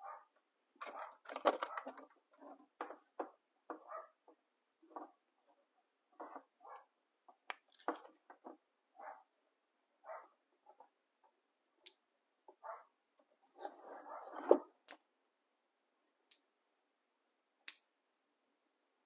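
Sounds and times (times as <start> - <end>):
rustling handling noise: 0.8 - 3.3.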